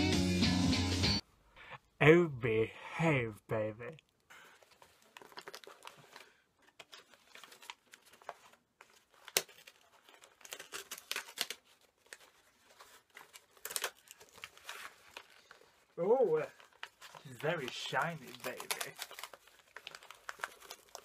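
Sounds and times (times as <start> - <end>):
packaging tearing and crinkling: 4.5 - 21.0.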